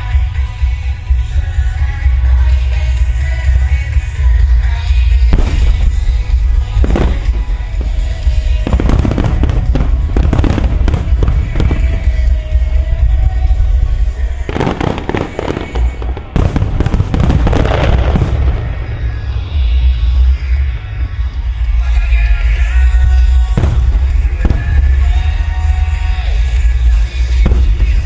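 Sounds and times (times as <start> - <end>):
fireworks bursting and crackling: 0.0 - 28.0
loud music with heavy bass: 0.0 - 28.0.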